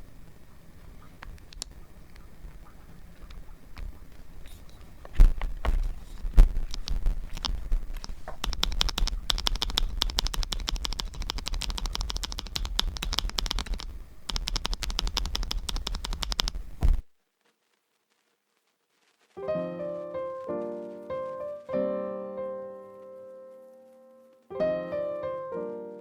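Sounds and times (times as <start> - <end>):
mechanical keyboard typing: 6.4 - 17.0.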